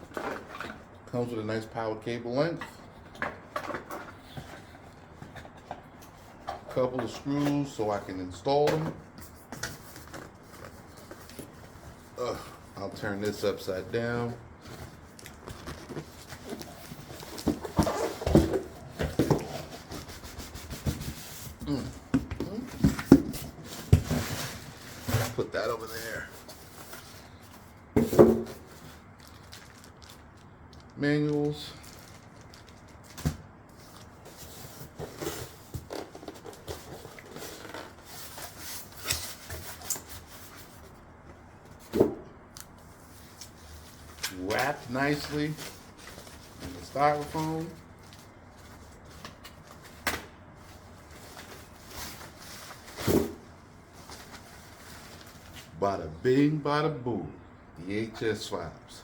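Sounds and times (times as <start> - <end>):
cardboard box rustling and scraping: 14.6 - 21.6.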